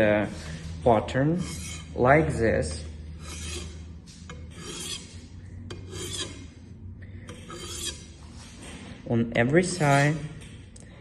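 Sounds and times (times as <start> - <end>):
knife rasping on sharpening stone: 1.4 - 2.0, 3.2 - 6.5, 7.3 - 8.1.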